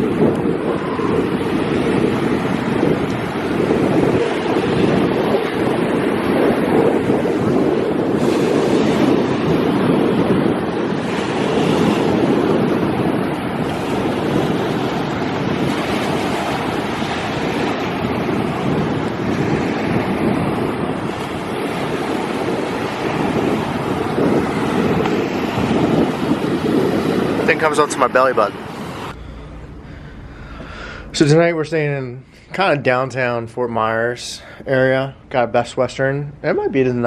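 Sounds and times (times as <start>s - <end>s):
wind buffeting microphone: 0.0s - 34.2s
sea surf rushing: 0.0s - 35.3s.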